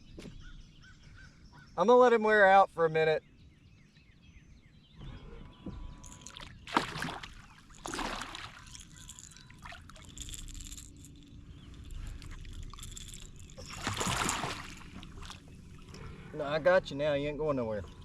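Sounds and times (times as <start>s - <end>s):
water sloshing against kayak hull: 5.0s - 16.8s
water splashing: 6.0s - 16.3s.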